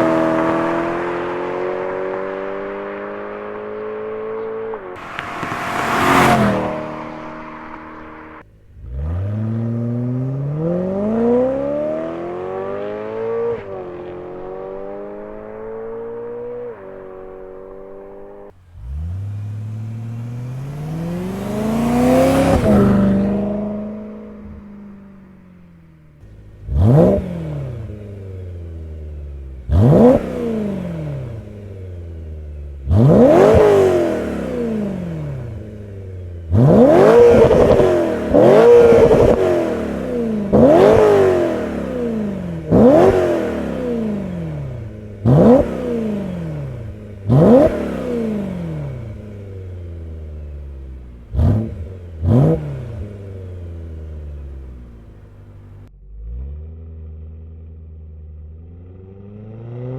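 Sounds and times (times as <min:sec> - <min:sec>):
engine throttle blips: 0:00.0 - 0:58.6
car engine idling burble: 0:53.1 - 0:55.8.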